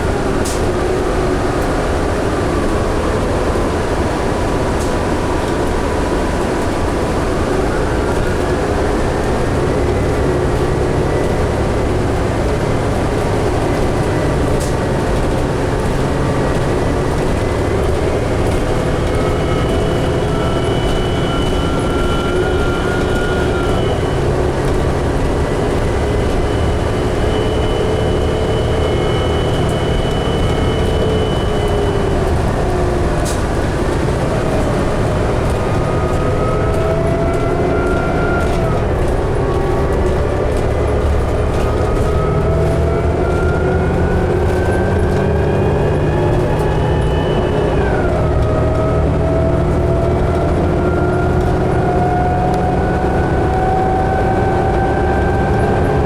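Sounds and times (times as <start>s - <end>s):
bus engine rumble: 0.0s - 56.0s
drivetrain whine: 0.0s - 56.0s.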